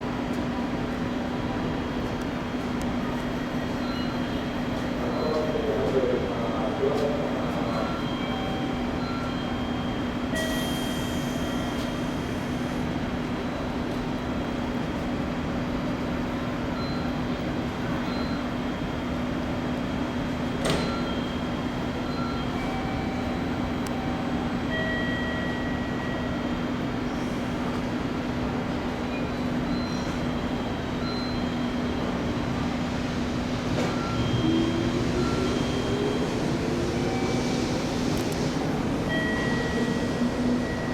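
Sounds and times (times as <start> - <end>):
rising tone of departing train: 0.0 - 40.9
electric train humming: 30.3 - 40.9.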